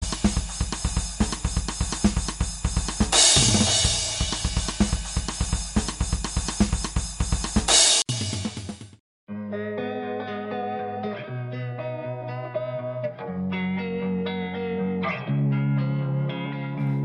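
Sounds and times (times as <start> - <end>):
fast drum kit beat: 0.0 - 9.0
cymbal crashes: 0.1 - 6.1.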